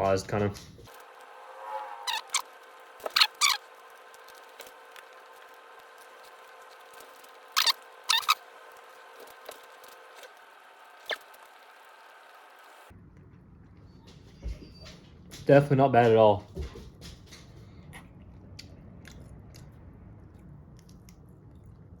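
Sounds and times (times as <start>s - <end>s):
chewing smacks and crunches: 18.0s - 22.0s.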